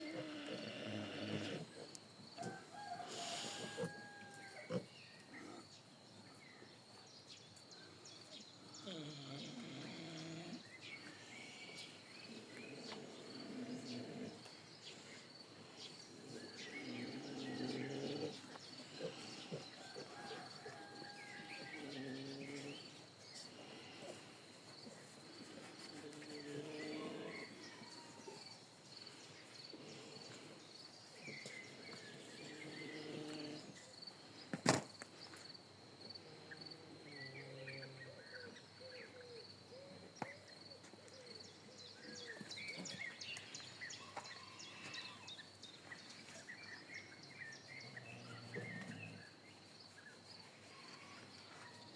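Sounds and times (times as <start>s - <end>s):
pig snoring: 0.0s - 2.0s, 8.8s - 10.8s, 12.2s - 14.5s, 16.1s - 20.5s, 21.4s - 23.0s, 25.4s - 27.6s, 31.2s - 33.9s, 36.3s - 38.2s, 47.8s - 49.4s
crickets chirping: 0.0s - 51.9s.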